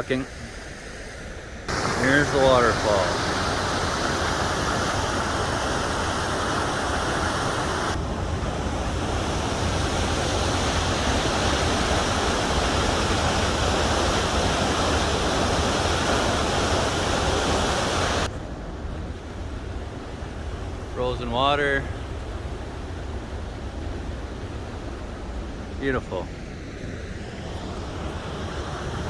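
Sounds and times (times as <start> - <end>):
waterfall rushing: 1.7 - 18.3.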